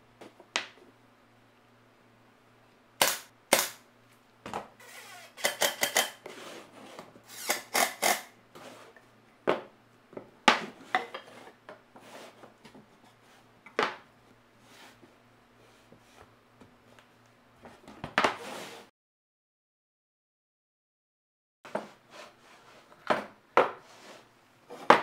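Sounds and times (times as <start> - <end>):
hard objects clicking and knocking: 5.4 - 6.2.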